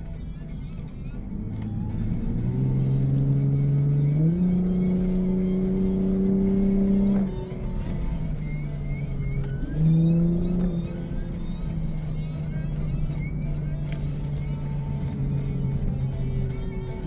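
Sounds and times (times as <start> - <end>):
car engine accelerating: 0.0 - 17.0.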